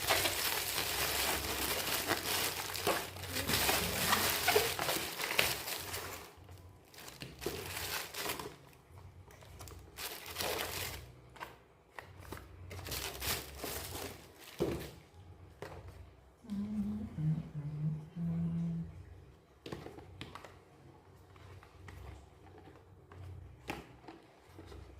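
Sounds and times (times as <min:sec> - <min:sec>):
packaging tearing: 0:00.0 - 0:08.6, 0:10.0 - 0:11.0
packaging crinkling and rustling: 0:00.0 - 0:15.0.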